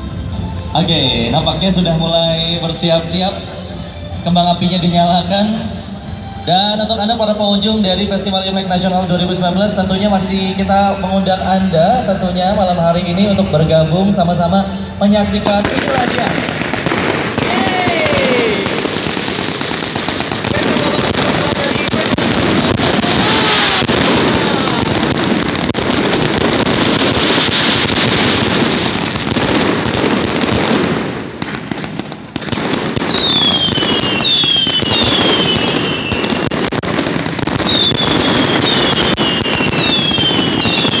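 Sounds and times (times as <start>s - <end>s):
fireworks bangs and crackles: 15.1s - 41.0s
high falling firework whistles: 22.2s - 25.7s, 33.0s - 36.3s, 37.6s - 41.0s.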